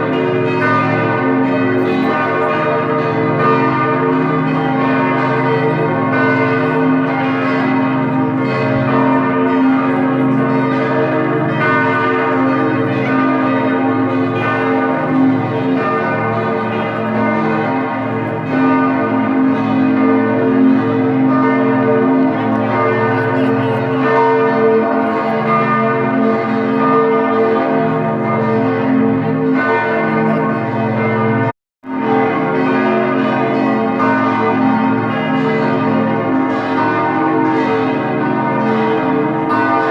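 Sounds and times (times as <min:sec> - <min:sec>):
church bells pealing: 0:00.0 - 0:39.9.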